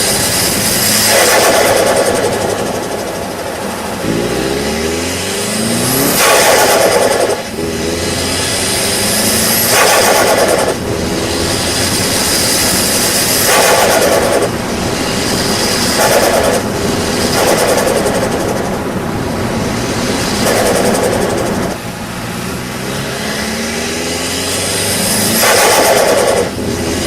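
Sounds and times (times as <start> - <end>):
compressor surge flutter: 0.0 - 27.0
turbocharged engine revving: 0.0 - 27.0.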